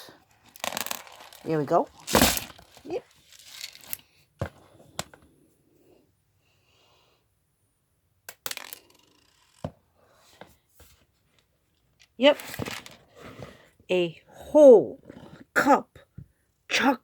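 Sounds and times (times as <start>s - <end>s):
plastic bricks clicking and clattering: 0.5s - 4.0s, 8.3s - 9.7s.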